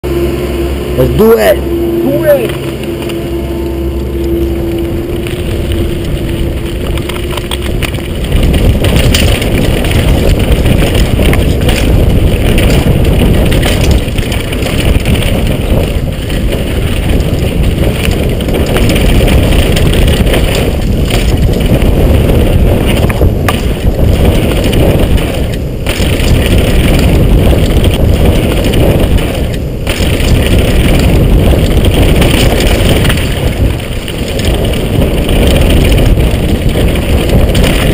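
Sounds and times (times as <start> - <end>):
steady hum: 0.0 - 37.9
wind buffeting microphone: 0.0 - 37.9
mountain bike clattering over trail: 5.4 - 37.9.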